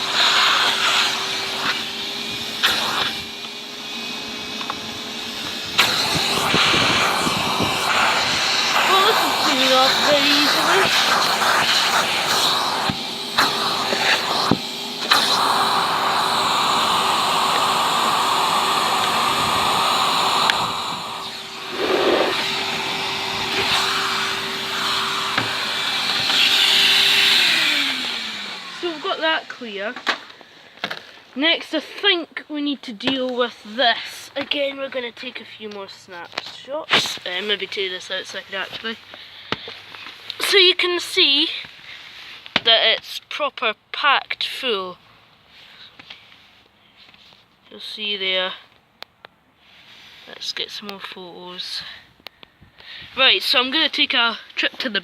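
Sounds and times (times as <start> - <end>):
vacuum cleaner running: 0.0 - 32.1, 52.9 - 55.0.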